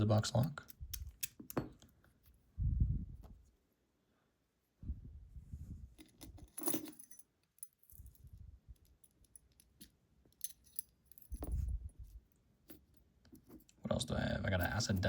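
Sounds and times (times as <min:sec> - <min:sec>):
metal lock parts clinking: 0:00.0 - 0:02.4, 0:06.0 - 0:13.8.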